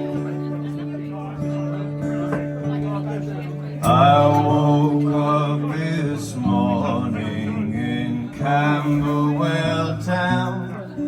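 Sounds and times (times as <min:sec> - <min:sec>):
acoustic guitar: 0:00.0 - 0:11.0
man singing: 0:03.8 - 0:11.0.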